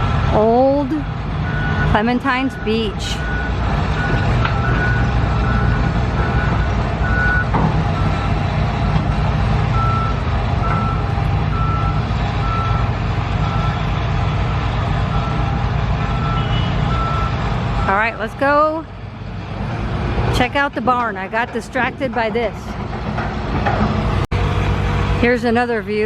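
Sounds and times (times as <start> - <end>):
heavy vehicle engine running: 0.0 - 26.0
backup alarm beeping: 1.4 - 8.4, 15.1 - 18.1.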